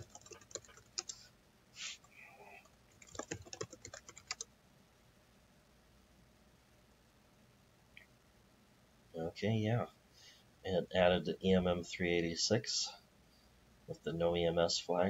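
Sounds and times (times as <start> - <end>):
typing on computer keyboard: 0.0 - 1.2, 2.9 - 4.5
brief hiss: 1.7 - 2.0.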